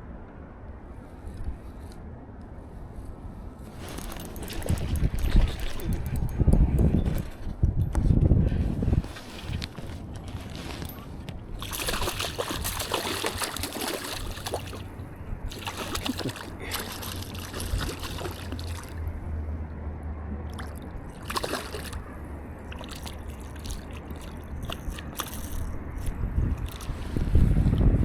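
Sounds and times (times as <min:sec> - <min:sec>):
wind rumble on microphone: 0:00.0 - 0:28.0
water sloshing and splashing: 0:03.6 - 0:06.3, 0:09.0 - 0:19.3, 0:20.4 - 0:27.4.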